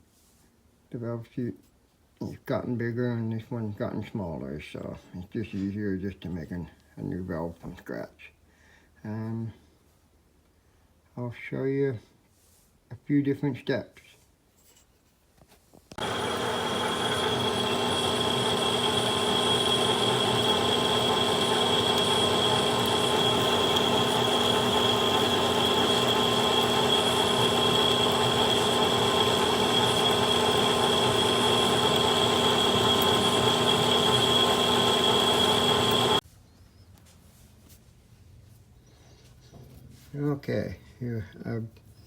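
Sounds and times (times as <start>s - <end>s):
metal lathe cutting steel: 16.0s - 36.2s.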